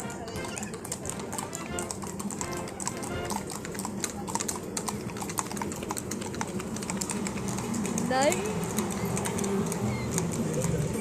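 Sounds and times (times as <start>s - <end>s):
music: 0.0s - 3.5s.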